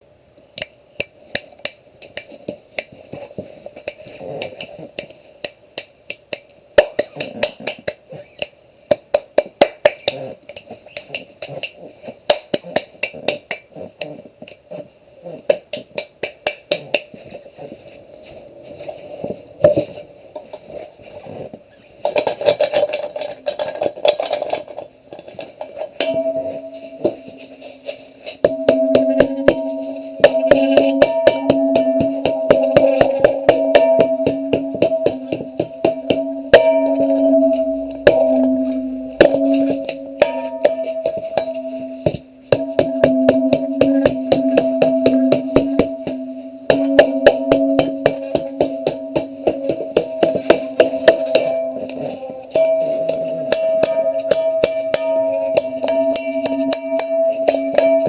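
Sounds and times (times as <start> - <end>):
rapid taps on hard object: 1.4 - 10.3, 10.9 - 14.6, 15.5 - 17.3, 28.4 - 58.0
steady tone: 26.0 - 58.0.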